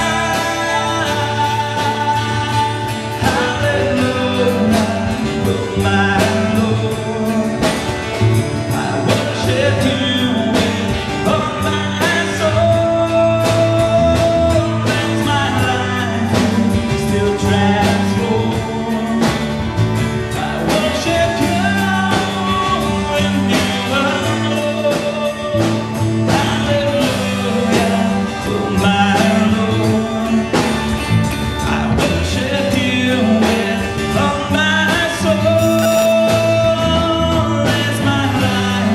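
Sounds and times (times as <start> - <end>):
person singing: 0.0 - 19.6, 31.7 - 38.9
rock band playing: 0.0 - 38.9
drum kit beat: 35.5 - 36.3.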